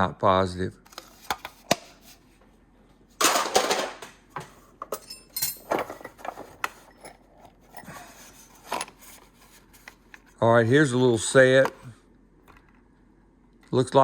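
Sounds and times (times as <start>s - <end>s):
steel sockets clinking and rattling: 4.9s - 7.8s.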